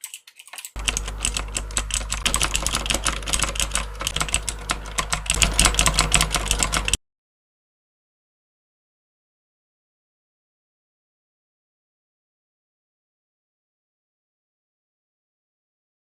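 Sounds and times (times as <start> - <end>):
mechanical keyboard typing: 0.0 - 7.0
steady low hum: 0.8 - 7.0.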